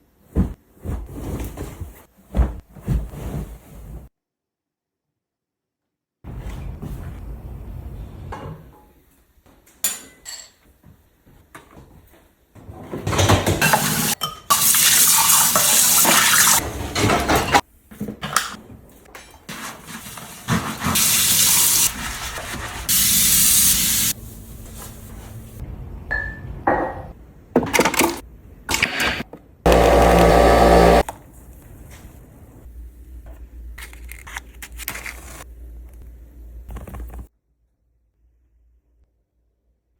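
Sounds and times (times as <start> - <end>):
dishes clinking: 9.8 - 10.7, 13.2 - 14.7
water running from a tap: 13.8 - 16.6.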